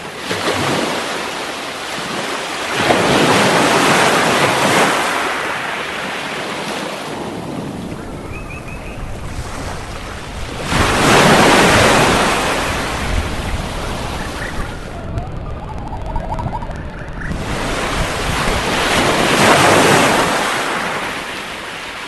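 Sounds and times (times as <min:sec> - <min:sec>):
sea surf washing on beach: 0:00.0 - 0:15.2, 0:15.8 - 0:22.0
wave breaking: 0:09.1 - 0:22.0.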